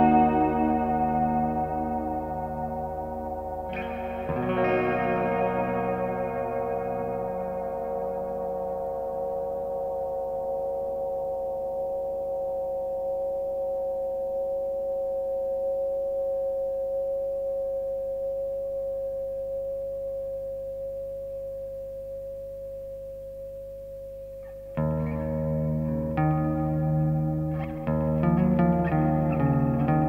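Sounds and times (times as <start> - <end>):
electric guitar reverb tones: 0.0 - 11.8, 24.7 - 30.0.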